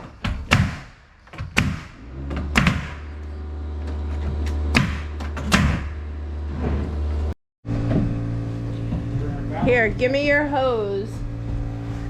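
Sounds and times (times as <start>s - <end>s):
knocks on wooden roof sheathing: 0.0s - 3.1s, 4.7s - 6.0s
low machine hum: 2.0s - 12.0s.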